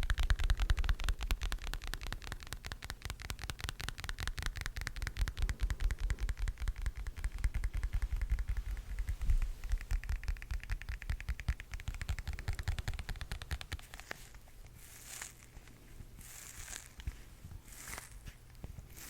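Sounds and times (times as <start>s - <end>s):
close-up crackling and tapping: 0.0s - 19.0s
brushing hiss: 12.4s - 19.0s.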